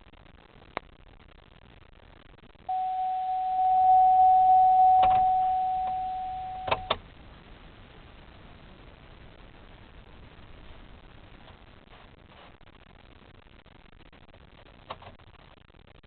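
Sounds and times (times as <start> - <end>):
steady electronic beep tone: 2.7 - 6.9.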